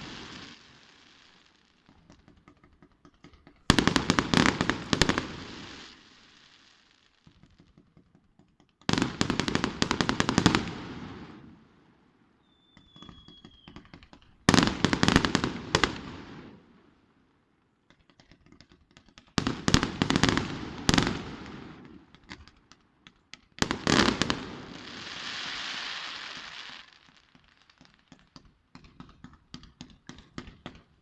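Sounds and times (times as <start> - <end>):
firework crackles: 0.0 - 7.6, 8.8 - 17.0, 18.0 - 31.0
fireworks bangs: 0.0 - 7.8, 8.8 - 11.8, 12.4 - 16.8, 18.4 - 31.0
firework whistle: 12.4 - 14.0.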